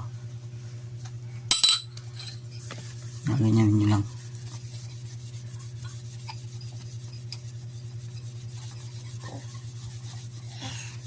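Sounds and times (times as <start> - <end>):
cloth rubbing on metal: 2.2 - 11.0.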